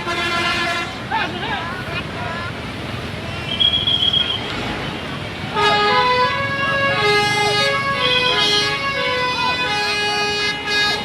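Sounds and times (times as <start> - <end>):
bus musical horn playing tune: 0.0 - 1.0, 5.5 - 11.0
road noise: 0.0 - 11.0.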